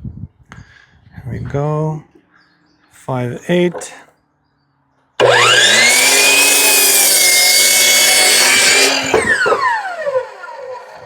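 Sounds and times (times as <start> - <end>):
power saw cutting wood: 5.2 - 11.0.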